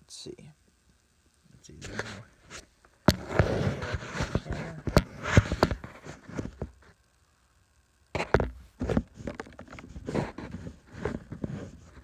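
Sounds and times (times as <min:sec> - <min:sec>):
camera handling knocks and rustling: 0:03.0 - 0:06.8, 0:08.2 - 0:11.6.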